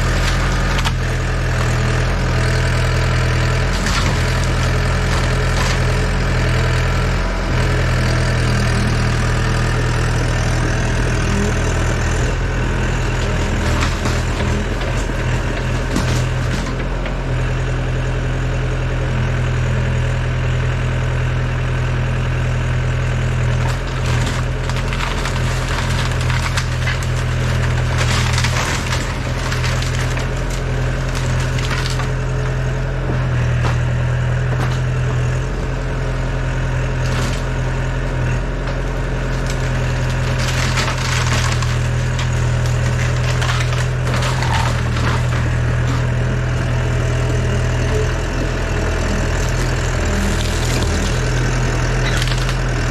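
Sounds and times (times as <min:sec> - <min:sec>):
wood cracking and splintering: 0:00.0 - 0:17.5, 0:23.4 - 0:52.9
excavator diesel engine running: 0:00.0 - 0:52.9.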